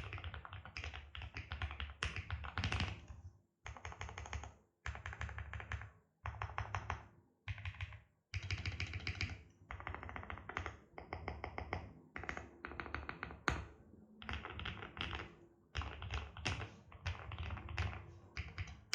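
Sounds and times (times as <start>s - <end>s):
typing on a keyboard: 0.0s - 18.9s.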